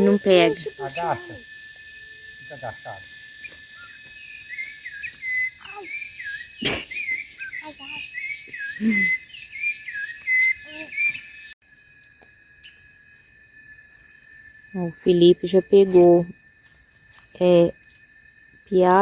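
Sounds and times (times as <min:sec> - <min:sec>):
insect chorus: 0:00.0 - 0:19.0
bird warbling whistle: 0:03.8 - 0:11.5.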